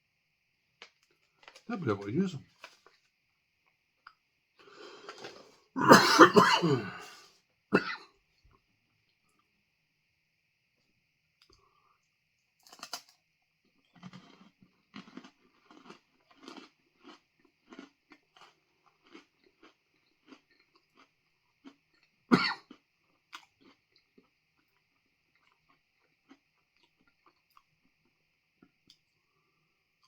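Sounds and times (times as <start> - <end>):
crunchy chewing: 2.5 - 3.1, 12.6 - 29.2
person coughing: 5.8 - 7.2, 7.8 - 8.0, 22.3 - 22.6.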